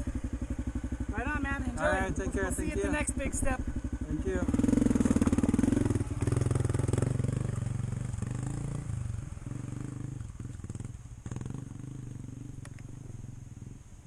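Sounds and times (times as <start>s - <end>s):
dirt bike engine: 0.0s - 14.0s.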